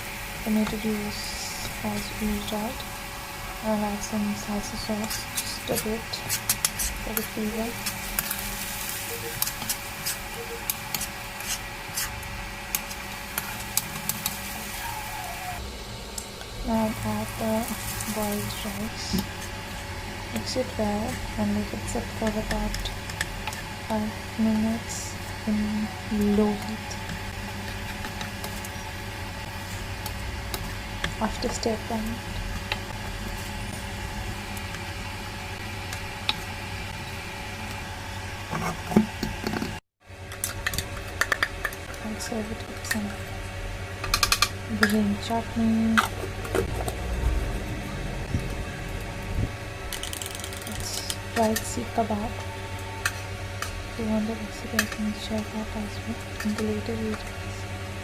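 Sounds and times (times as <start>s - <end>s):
rice hissing in a pan: 0.0s - 15.6s, 16.7s - 19.7s
sauce sizzling: 0.0s - 38.4s
faint steady hum: 0.0s - 58.0s.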